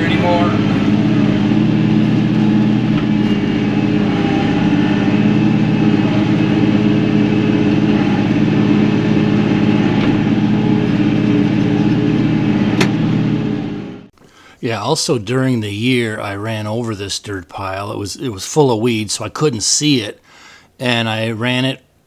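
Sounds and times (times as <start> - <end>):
tractor diesel engine running: 0.0 - 14.1.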